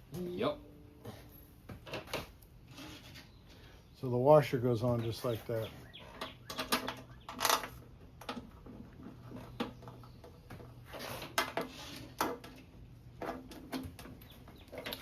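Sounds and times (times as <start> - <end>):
metal bolts clinking and rattling: 6.1 - 10.0.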